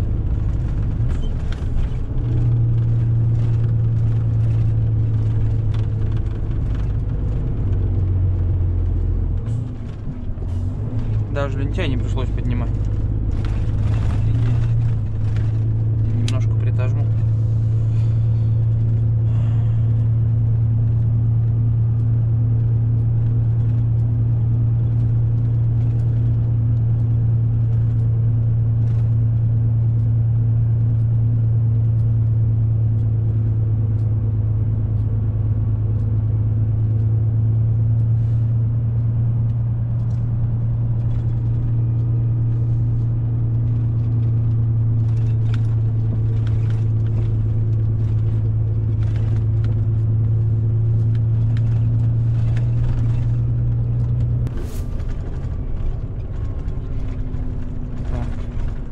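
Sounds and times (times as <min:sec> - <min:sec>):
diesel truck engine droning: 0:00.0 - 0:58.9.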